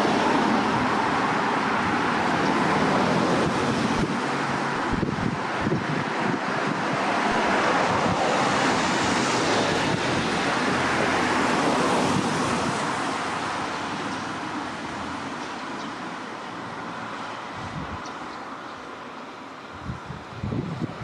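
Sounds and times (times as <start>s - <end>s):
wind on microphone: 0.0s - 14.0s, 17.4s - 18.2s, 19.7s - 21.0s
road vehicle passing: 0.0s - 21.0s.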